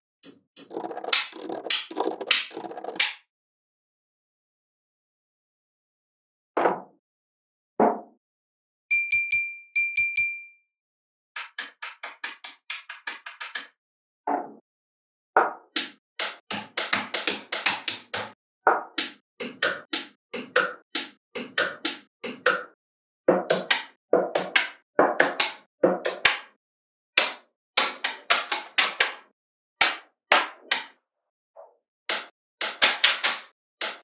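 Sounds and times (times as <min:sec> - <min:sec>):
magnetic balls clicking together: 0:00.2 - 0:03.2.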